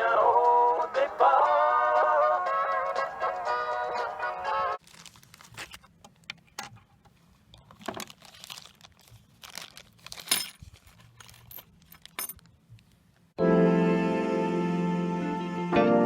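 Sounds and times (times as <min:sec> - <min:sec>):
handling clicks and rustles: 0:04.8 - 0:13.3.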